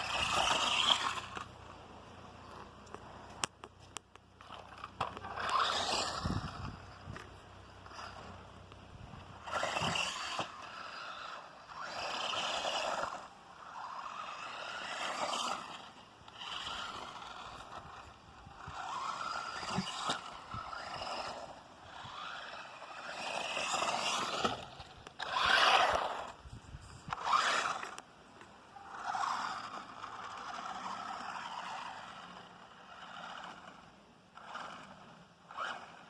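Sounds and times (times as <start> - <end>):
electric motor whining: 0.0 - 3.6, 4.4 - 36.0
tyres scraping over ground: 0.0 - 36.0.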